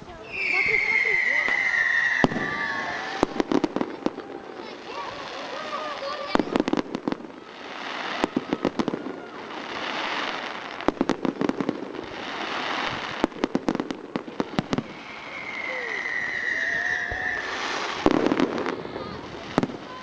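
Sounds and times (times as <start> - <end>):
crackling hiss: 0.0 - 20.0
fireworks bangs: 0.0 - 20.0
falling whistle: 0.2 - 3.4, 14.8 - 18.0.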